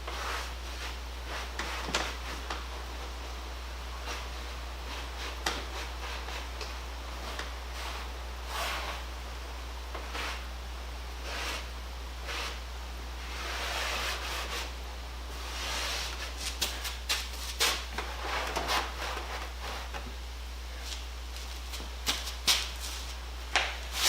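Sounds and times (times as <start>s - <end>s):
brush scrubbing wood: 13.3s - 14.8s, 15.4s - 20.0s.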